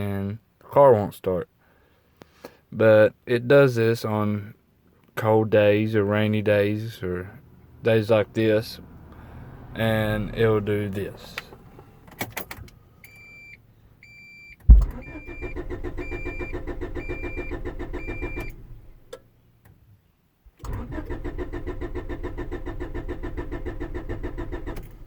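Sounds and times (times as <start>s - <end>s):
starter clunk: 14.7s - 15.1s
starter cranking engine: 20.6s - 25.0s.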